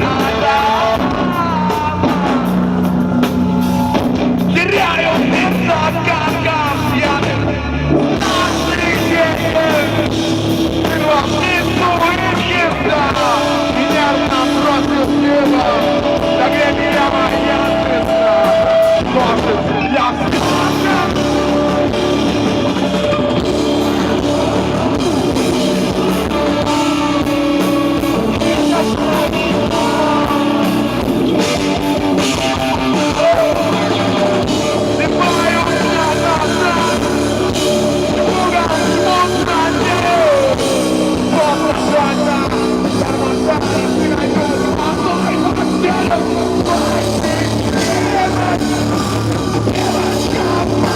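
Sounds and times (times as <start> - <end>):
drum kit: 0.0 - 50.9
electric guitars: 0.0 - 50.9
person singing: 0.0 - 50.9.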